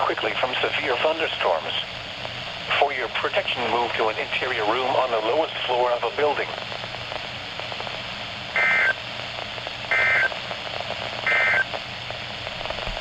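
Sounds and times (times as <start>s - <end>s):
radio hiss: 0.0s - 13.0s
buzzy two-tone data bursts: 8.6s - 9.0s, 9.9s - 10.3s, 11.2s - 11.7s.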